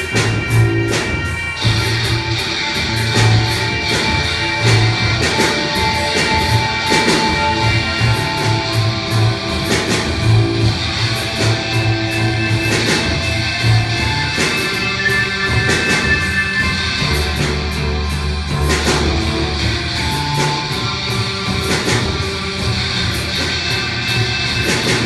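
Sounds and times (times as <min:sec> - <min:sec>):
rock guitar notes: 0:00.0 - 0:25.0
steady drum beat: 0:00.0 - 0:25.0.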